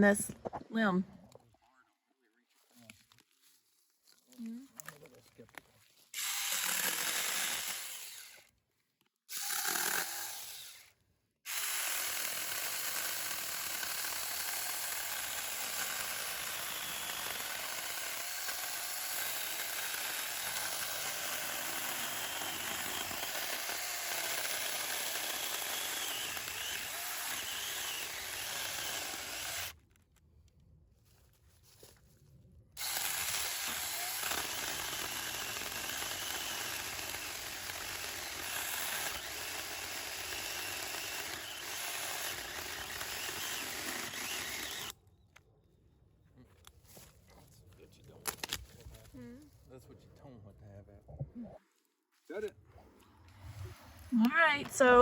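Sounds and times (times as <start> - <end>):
cordless chainsaw cutting wood: 6.2 - 8.5, 9.3 - 29.8, 32.8 - 45.0, 54.4 - 55.0.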